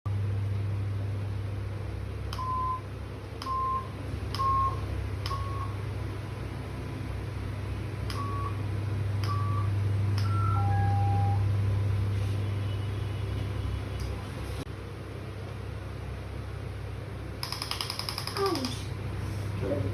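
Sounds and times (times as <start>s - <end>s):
steady low hum: 0.1s - 19.9s
electronic beeps: 9.3s - 11.5s.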